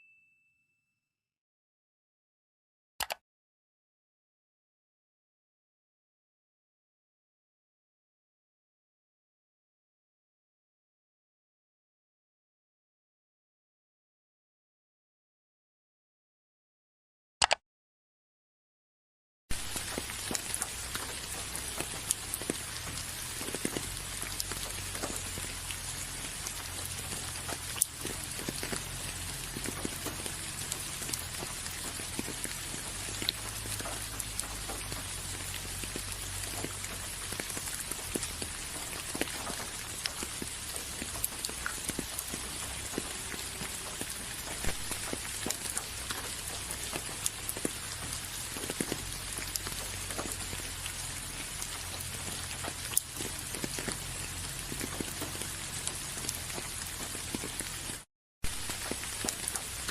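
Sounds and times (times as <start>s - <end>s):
rain hissing: 19.5s - 59.9s
raindrops ticking on a surface: 19.5s - 59.9s.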